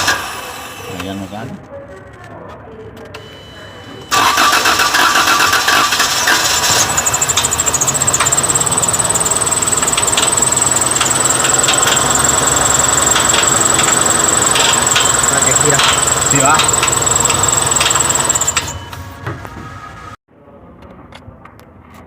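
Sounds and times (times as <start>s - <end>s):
car starter cranking: 4.1s - 19.0s
car engine running with whine: 4.1s - 20.2s.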